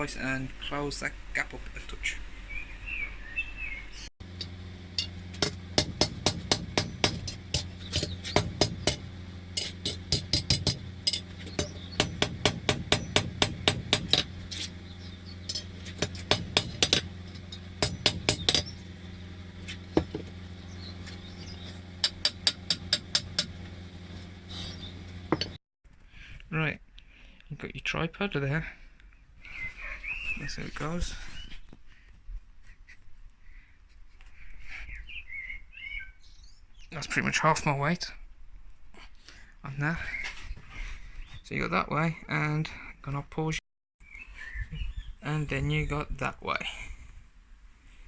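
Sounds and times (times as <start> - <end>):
steady low hum: 4.2 - 25.6
hammer striking iron: 4.4 - 14.4, 15.5 - 18.8, 22.0 - 23.6, 25.3 - 25.6.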